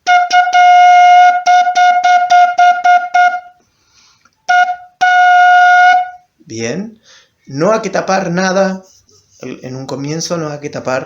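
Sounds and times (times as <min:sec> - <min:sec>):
cane flute notes: 0:00.0 - 0:03.7, 0:04.4 - 0:06.3.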